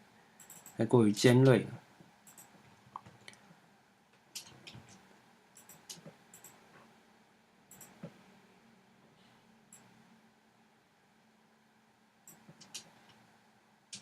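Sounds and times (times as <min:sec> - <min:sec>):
faint computer mouse clicks: 0:07.7 - 0:08.1.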